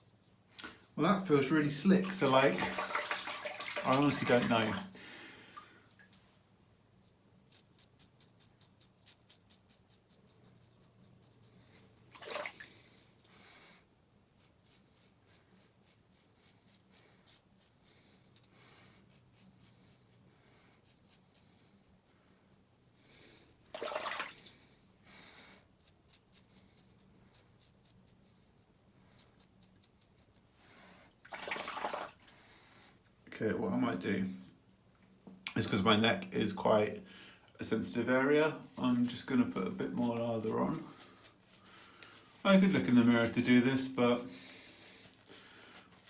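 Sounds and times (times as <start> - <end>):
razor scraping stubble: 0.0 - 0.3, 7.4 - 12.0, 14.2 - 22.9, 25.6 - 30.6, 37.6 - 46.0
water splash: 1.9 - 4.9, 12.1 - 12.7, 23.7 - 24.4, 31.3 - 32.2.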